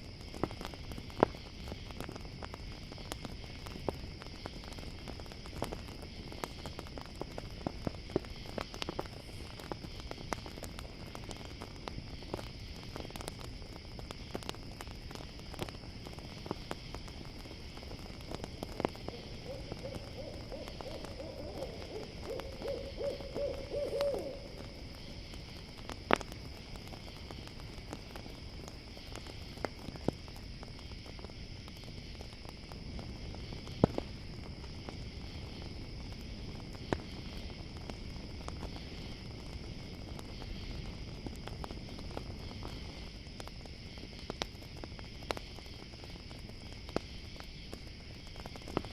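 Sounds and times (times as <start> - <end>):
campfire crackling and popping: 0.0 - 48.9
crickets chirping: 0.0 - 48.9
owl calling: 19.1 - 24.6.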